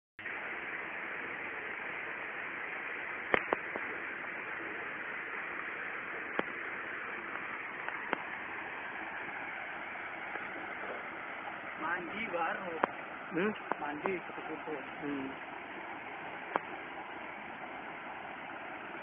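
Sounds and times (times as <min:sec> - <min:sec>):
water rushing over cascade: 0:00.2 - 0:19.0.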